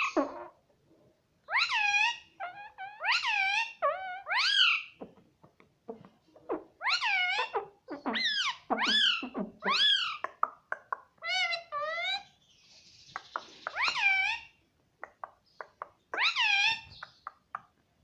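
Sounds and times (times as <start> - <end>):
parrot squawking: 0.0 - 0.6, 1.5 - 5.1, 6.5 - 10.4, 11.2 - 12.3, 13.6 - 14.6, 16.2 - 17.0.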